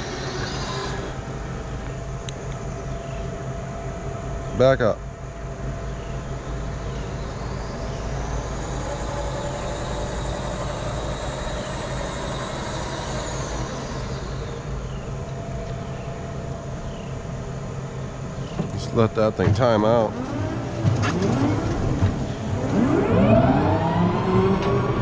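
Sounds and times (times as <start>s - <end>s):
electric mower humming: 0.0s - 4.4s, 5.4s - 25.0s
electric whine: 0.0s - 25.0s.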